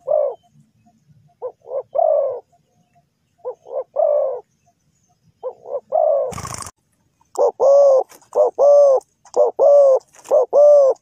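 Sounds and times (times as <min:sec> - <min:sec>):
doves cooing: 0:00.0 - 0:00.6, 0:01.4 - 0:02.6, 0:03.4 - 0:04.5, 0:05.4 - 0:06.7, 0:07.3 - 0:11.0.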